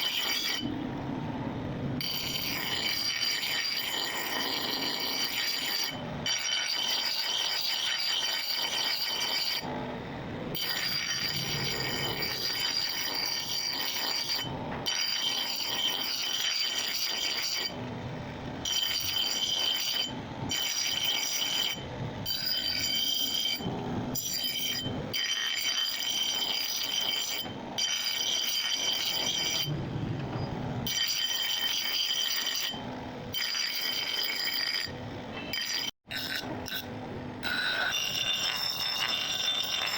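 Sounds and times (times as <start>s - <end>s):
power tool grinding metal: 0.0s - 39.9s.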